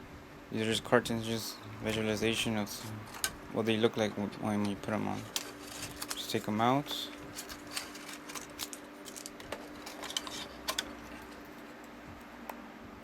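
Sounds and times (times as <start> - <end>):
steady low hum: 0.0 - 13.0
plastic clicks and rattles: 7.2 - 11.6.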